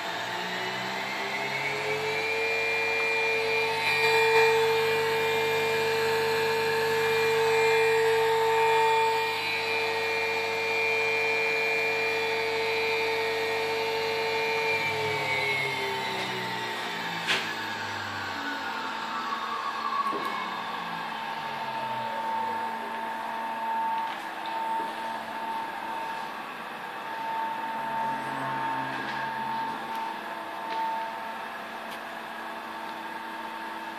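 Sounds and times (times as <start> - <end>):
router motor whining: 0.0 - 33.9.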